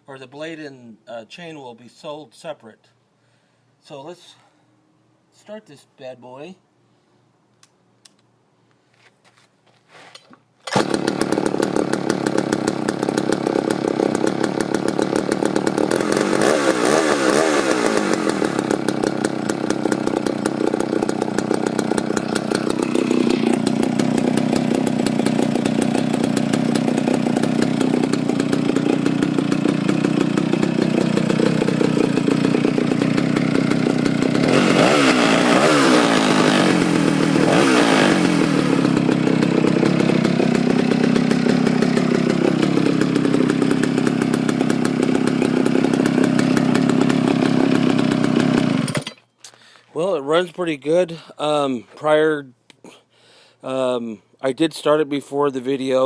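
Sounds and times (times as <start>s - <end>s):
chainsaw engine starting and revving: 10.6s - 49.8s.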